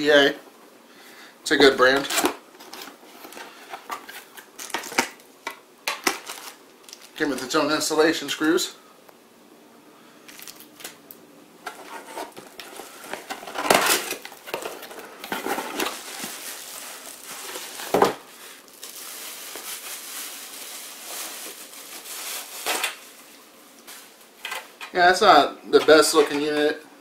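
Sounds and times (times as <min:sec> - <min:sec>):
plastic packaging crinkling: 0:01.9 - 0:07.6, 0:10.3 - 0:11.0, 0:11.7 - 0:24.6.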